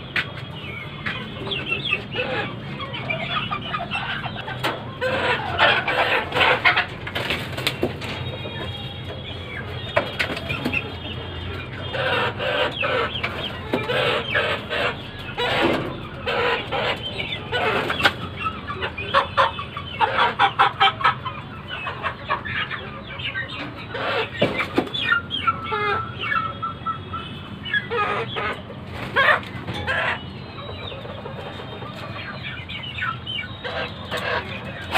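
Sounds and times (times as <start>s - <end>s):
chickens clucking: 0.0s - 34.9s.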